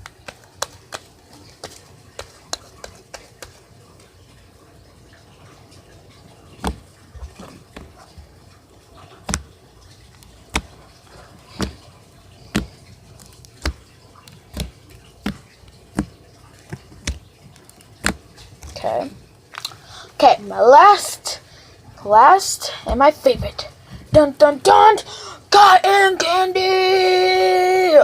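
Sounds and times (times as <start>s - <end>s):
slime clicking and popping: 12.5s - 18.7s.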